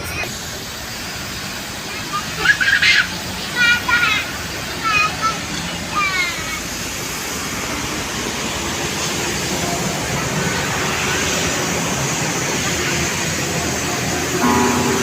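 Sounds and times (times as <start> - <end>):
diesel buses rumbling: 0.0 - 15.0
steady multi-tone sound: 14.4 - 15.0.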